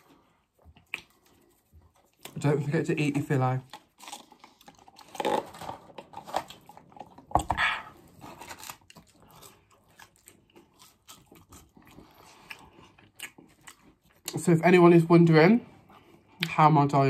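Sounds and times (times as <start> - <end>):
chewing and biting food: 0.0 - 14.6
wet mouth clicks: 0.8 - 1.3.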